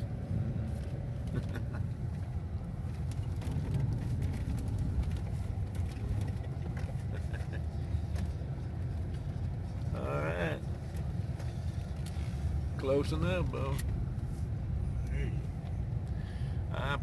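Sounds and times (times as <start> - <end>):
car engine and tyres rumbling: 0.0 - 17.0
light clicks and crackles: 10.7 - 12.9.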